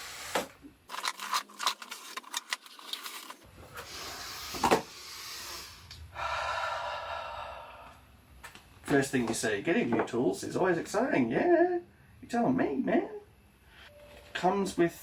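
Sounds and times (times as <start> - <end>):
cardboard scraping and tearing: 0.0 - 3.5
cardboard rustling: 0.4 - 3.5.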